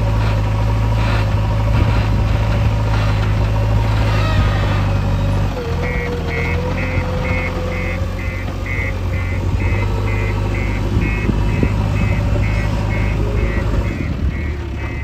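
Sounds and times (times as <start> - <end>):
diesel engine running: 0.0 - 15.0
reversing alarm beeping: 5.3 - 15.0.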